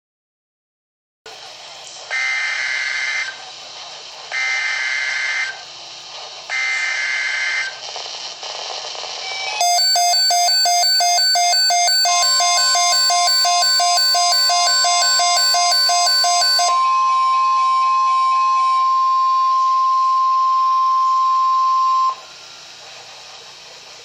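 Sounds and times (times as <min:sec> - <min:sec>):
radio hiss: 0:01.3 - 0:09.4
pulsing electronic alert tone: 0:09.6 - 0:17.0
steady alert tone: 0:09.6 - 0:17.0
electronic data warble: 0:09.6 - 0:17.7.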